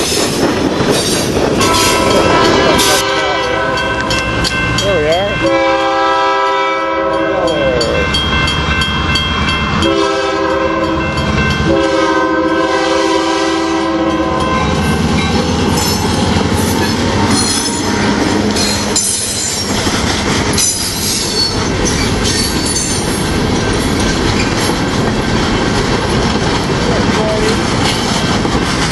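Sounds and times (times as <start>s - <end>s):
train rumbling past: 0.0s - 28.9s
locomotive air horn: 1.6s - 4.1s, 5.4s - 7.8s, 9.8s - 14.8s
wheels clattering over rail joints: 15.0s - 28.9s.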